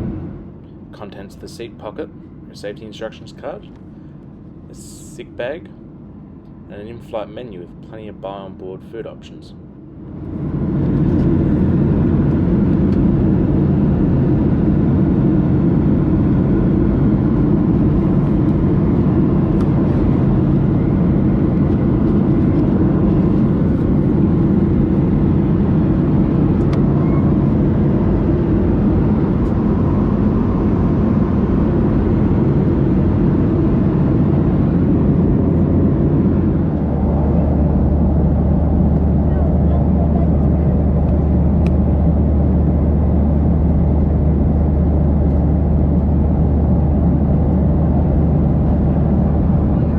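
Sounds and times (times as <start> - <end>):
jet engines rumbling: 0.0 - 49.9
rushing air: 27.4 - 39.2.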